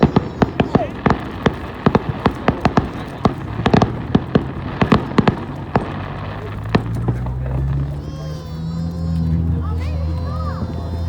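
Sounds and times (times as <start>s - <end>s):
fireworks popping and banging: 0.0s - 11.0s.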